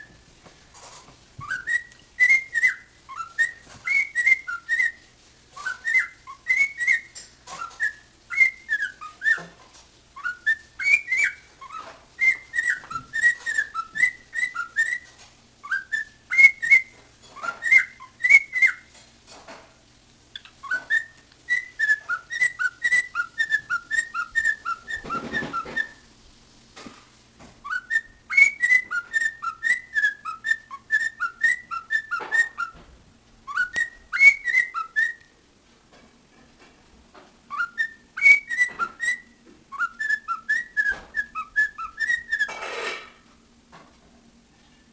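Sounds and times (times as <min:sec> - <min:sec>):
cockatiel whistling: 0:01.4 - 0:09.6, 0:10.2 - 0:19.0, 0:20.4 - 0:26.1, 0:27.6 - 0:32.8, 0:33.5 - 0:35.3, 0:37.5 - 0:43.0.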